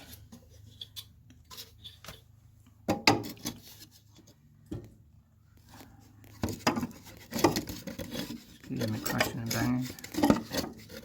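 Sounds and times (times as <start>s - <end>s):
knocks and clatter of objects: 6.2s - 11.0s.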